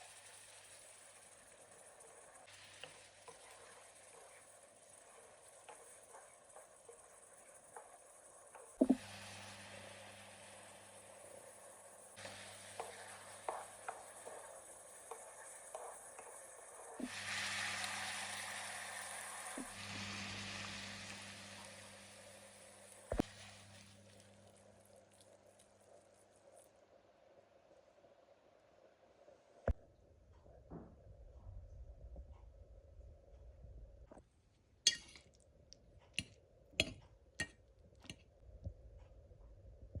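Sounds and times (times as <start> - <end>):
food sizzling in a frying pan: 0.0 - 26.6.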